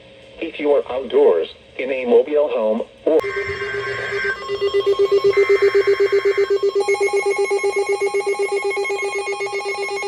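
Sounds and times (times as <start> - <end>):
electronic alert tone pulsing: 3.2 - 10.0
higher electronic tone: 3.2 - 10.0.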